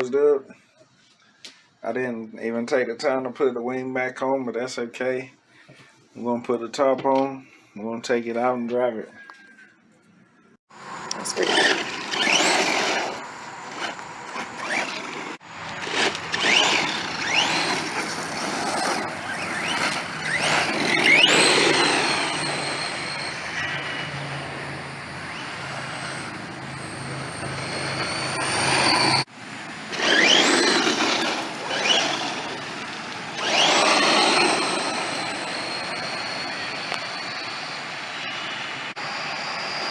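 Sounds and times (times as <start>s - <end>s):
tyre and ground noise: 10.7s - 38.0s
electric motor whine: 10.8s - 39.9s.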